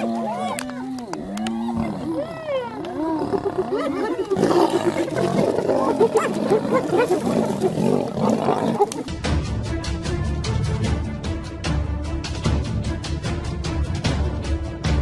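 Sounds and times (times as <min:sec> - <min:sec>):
predators growling and snarling: 0:00.0 - 0:09.1
background music with steady beat: 0:09.1 - 0:15.0.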